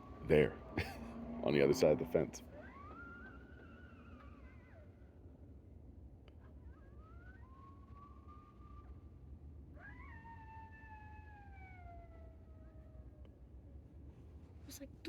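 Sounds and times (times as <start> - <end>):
faint coyote howls: 6.5 - 9.1, 9.7 - 13.3.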